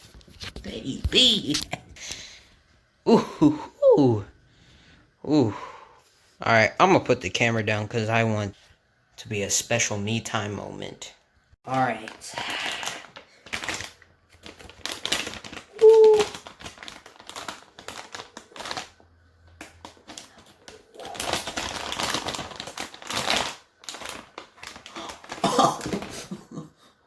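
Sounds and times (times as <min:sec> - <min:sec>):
plastic packaging crinkling: 0:12.6 - 0:26.1.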